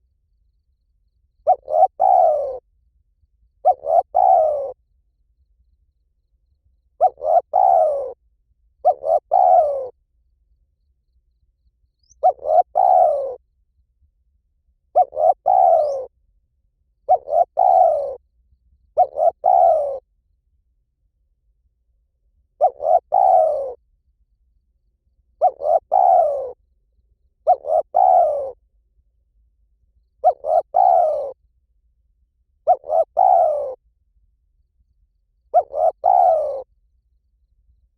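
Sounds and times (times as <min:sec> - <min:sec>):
dove cooing: 0:01.4 - 0:02.7, 0:03.6 - 0:04.8, 0:07.0 - 0:08.2, 0:08.8 - 0:10.0, 0:12.0 - 0:13.4, 0:14.9 - 0:16.1, 0:17.0 - 0:18.2, 0:19.0 - 0:20.1, 0:22.6 - 0:23.8, 0:25.4 - 0:26.6, 0:27.4 - 0:28.6, 0:30.2 - 0:31.4, 0:32.6 - 0:33.8, 0:35.5 - 0:36.7.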